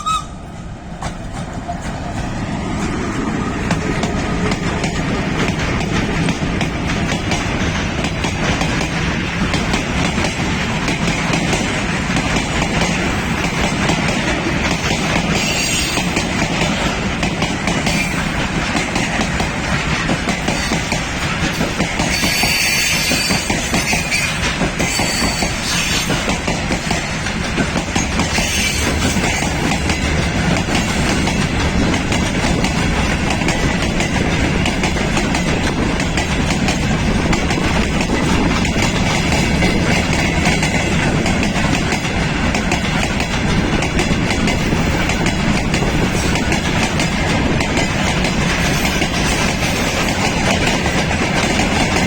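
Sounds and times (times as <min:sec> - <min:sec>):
train wheels clattering: 0:00.0 - 0:52.0
high-pitched wheel squeals: 0:15.4 - 0:16.0, 0:22.1 - 0:26.2, 0:28.4 - 0:29.0.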